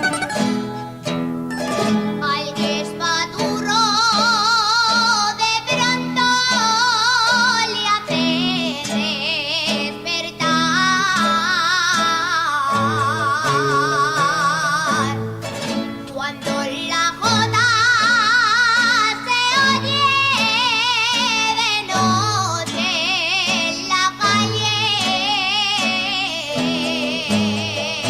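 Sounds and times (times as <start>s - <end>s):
plucked strings strumming chords: 0.0s - 28.0s
woman singing with vibrato: 1.7s - 15.4s, 16.0s - 28.0s.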